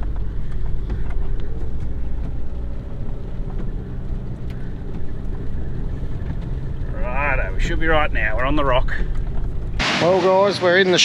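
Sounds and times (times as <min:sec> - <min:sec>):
light ticks and knocks: 0:00.0 - 0:06.9
vehicle engine running: 0:00.0 - 0:10.3.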